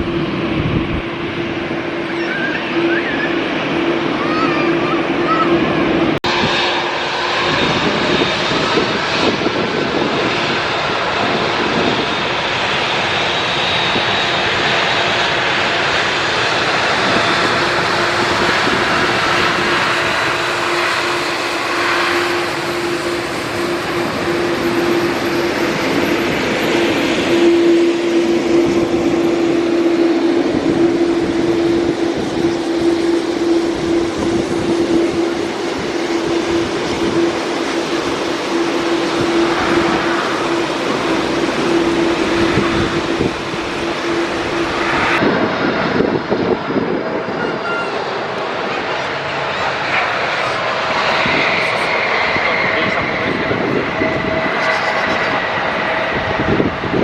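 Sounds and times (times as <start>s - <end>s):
jet engines running: 0.0s - 57.0s
wind rumbling on microphone: 0.0s - 57.0s
steady droning tone: 19.5s - 45.4s.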